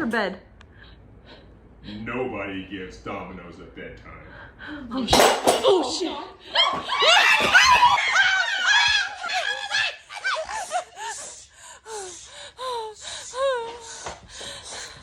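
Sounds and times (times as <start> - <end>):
person gasping and laughing: 10.2 - 15.0.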